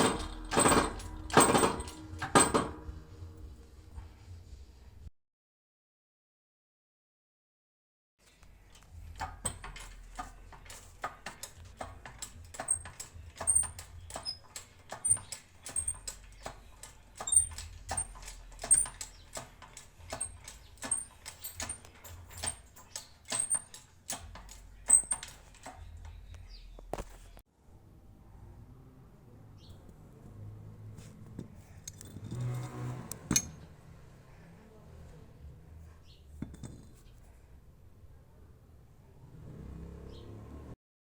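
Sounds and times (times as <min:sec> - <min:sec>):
metal tools tapping and clicking: 0:00.0 - 0:02.9, 0:08.2 - 0:27.3, 0:31.0 - 0:33.7, 0:36.4 - 0:37.3.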